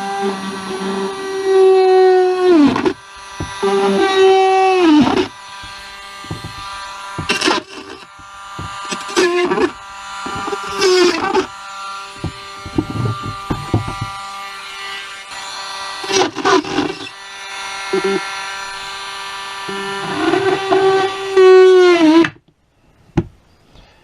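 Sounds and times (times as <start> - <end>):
drill bit biting into plastic: 0.0 - 14.3, 16.0 - 17.2, 17.9 - 18.3, 19.7 - 22.4
rotary tool whining: 0.0 - 22.4
knocks: 2.6 - 4.3, 4.9 - 11.5, 12.1 - 14.3.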